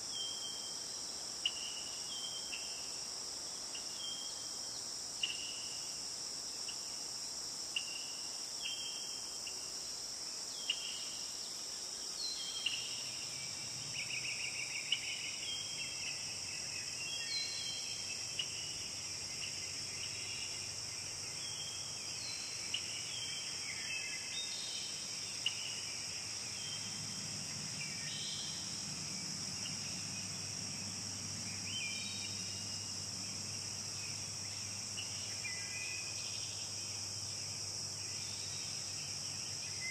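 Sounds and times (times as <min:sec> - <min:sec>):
insects chorus: 0:00.0 - 0:39.9.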